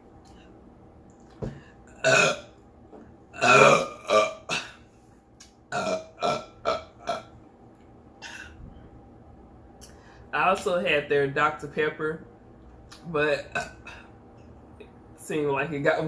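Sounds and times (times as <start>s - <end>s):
woman burping loudly: 1.9s - 2.5s, 3.4s - 4.8s, 5.7s - 7.3s, 13.4s - 14.1s.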